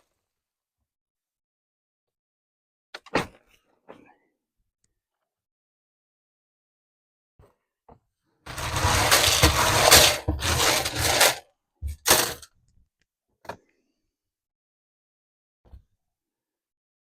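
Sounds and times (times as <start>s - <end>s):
corn kernels pouring and rattling: 8.5s - 11.4s.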